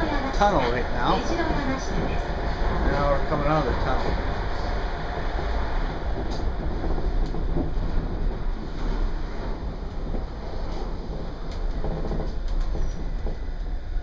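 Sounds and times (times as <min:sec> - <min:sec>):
monorail ride rumble: 0:00.0 - 0:14.0
faint clicks: 0:10.2 - 0:13.7.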